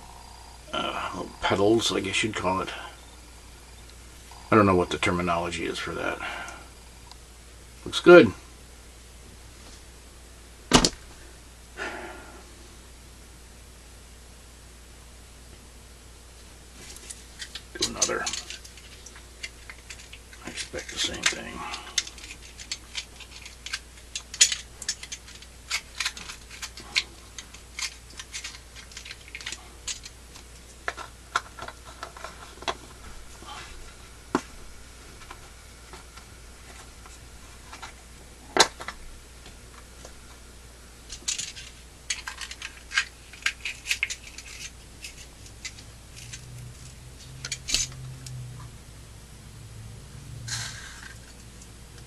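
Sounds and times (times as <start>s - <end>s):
tools scraping and tapping paper casing: 16.8s - 32.8s, 41.1s - 48.4s.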